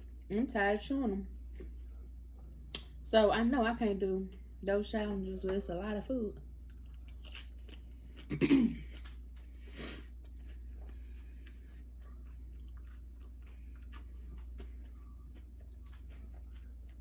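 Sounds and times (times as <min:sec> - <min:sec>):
chewing crunchy chips: 0:06.6 - 0:17.0.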